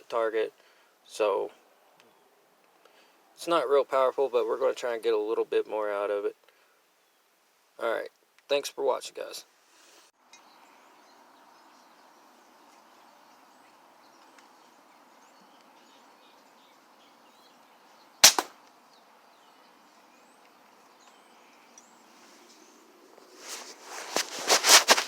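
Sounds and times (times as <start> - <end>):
air pistol shot crack: 18.2 - 18.6.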